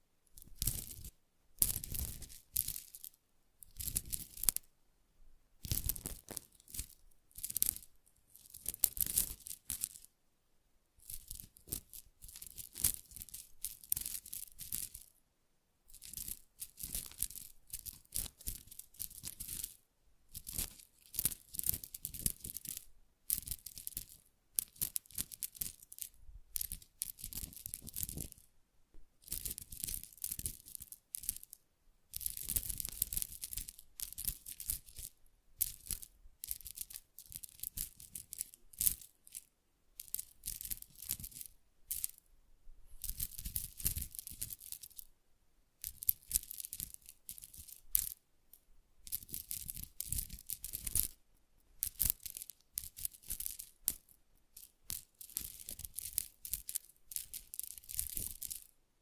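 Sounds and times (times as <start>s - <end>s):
crackly scratching and rustling: 0.2s - 4.7s, 5.6s - 10.1s, 11.0s - 15.2s, 15.9s - 45.1s, 45.8s - 58.8s.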